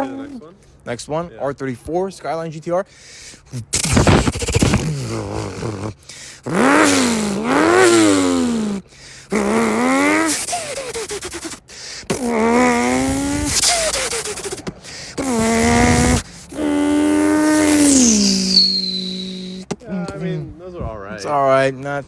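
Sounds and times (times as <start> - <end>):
car engine revving hard: 6.4 - 10.5, 12.1 - 19.1.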